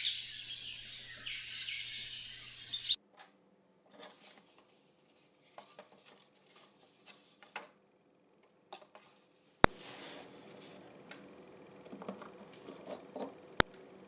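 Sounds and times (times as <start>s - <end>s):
hands tapping and scraping materials: 3.9s - 7.8s.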